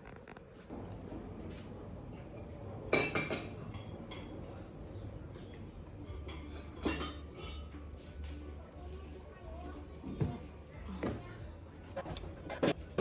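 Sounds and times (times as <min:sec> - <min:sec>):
dishes clinking: 0:02.0 - 0:04.6, 0:05.4 - 0:08.4.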